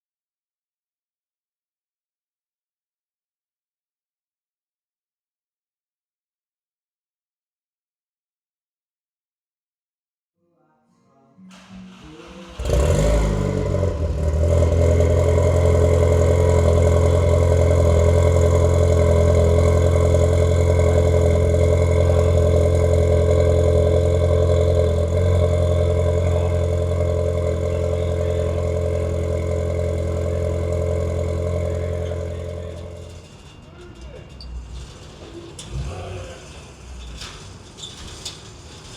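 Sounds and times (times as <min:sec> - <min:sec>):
car engine starting and idling: 0:11.5 - 0:38.9.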